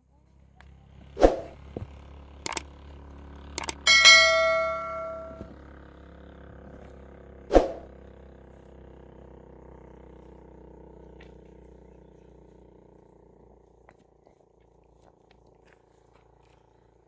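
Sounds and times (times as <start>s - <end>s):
metal object ringing: 3.7s - 5.5s.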